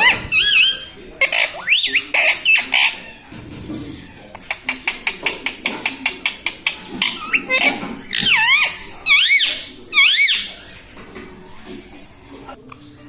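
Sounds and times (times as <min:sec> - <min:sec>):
parakeet squeaky calls: 0:00.0 - 0:03.2, 0:06.2 - 0:10.7
parakeet clicks and chirps: 0:04.3 - 0:10.8.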